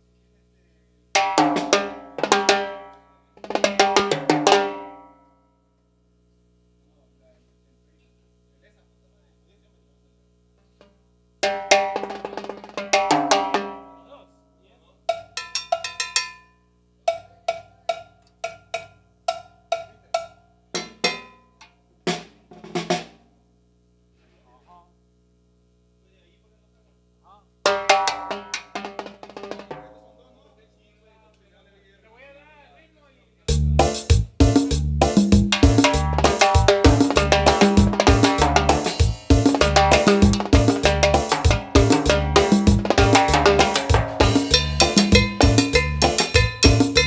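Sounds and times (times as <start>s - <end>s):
low hum from sound system: 0.0s - 1.1s, 5.6s - 11.4s, 23.4s - 27.6s, 29.9s - 47.0s
drum fills: 1.2s - 2.8s, 3.4s - 4.9s, 11.4s - 13.9s, 27.7s - 30.2s, 33.5s - 47.0s.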